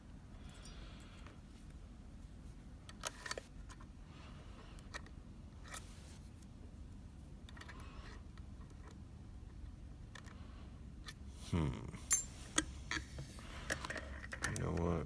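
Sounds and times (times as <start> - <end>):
lock picks clicking in a lock: 13.7 - 14.9.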